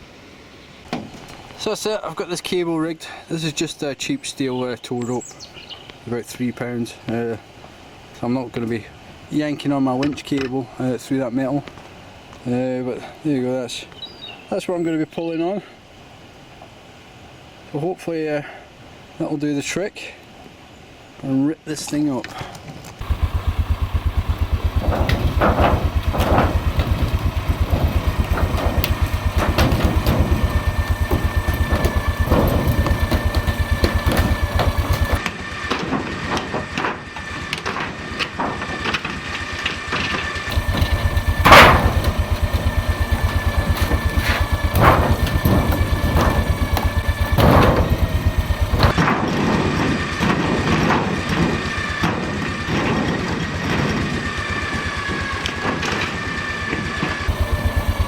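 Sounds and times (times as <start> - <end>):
short knocks and creaks: 22.4 - 39.1, 40.0 - 54.1
quad engine idling: 23.0 - 49.0, 49.9 - 58.0
winch whine: 23.0 - 49.0, 49.6 - 58.0.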